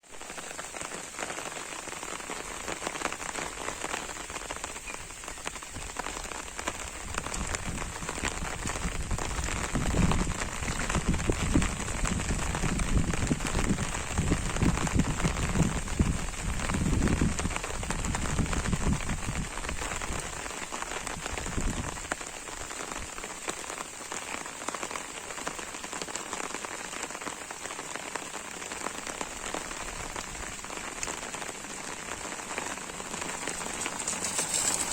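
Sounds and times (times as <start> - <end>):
steady rain falling: 0.0 - 34.9
low uneven rumble: 31.2 - 34.9.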